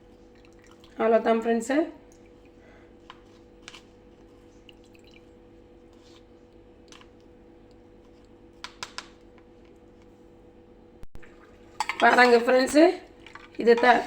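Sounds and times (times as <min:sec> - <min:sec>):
kitchen utensils clicking and tapping: 0:11.8 - 0:14.0.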